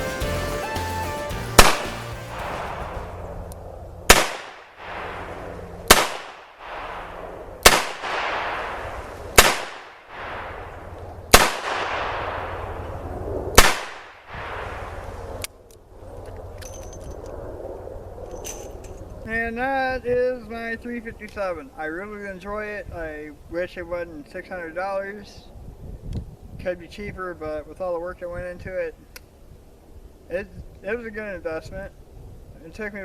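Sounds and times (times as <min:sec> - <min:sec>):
background music: 0:00.0 - 0:03.2.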